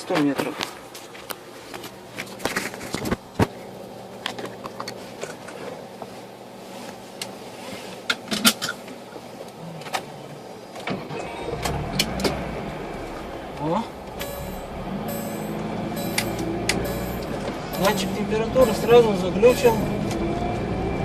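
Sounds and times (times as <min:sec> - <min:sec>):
car engine idling: 0:11.8 - 0:20.2.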